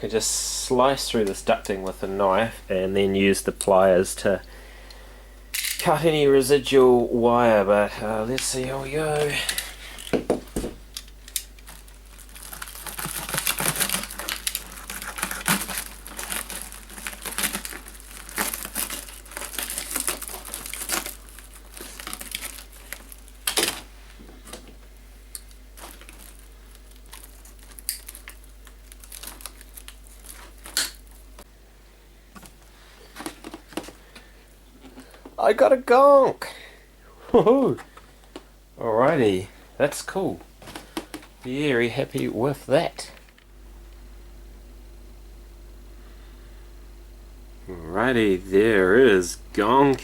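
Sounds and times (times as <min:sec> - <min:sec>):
flexible ducting crinkling and tearing: 0:11.2 - 0:24.6, 0:25.4 - 0:31.4.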